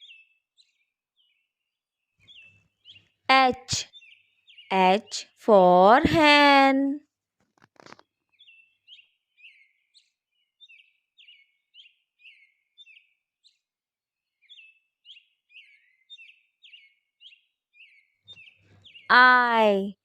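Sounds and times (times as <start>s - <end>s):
faint bird chirping: 0.0s - 5.7s, 14.2s - 19.9s.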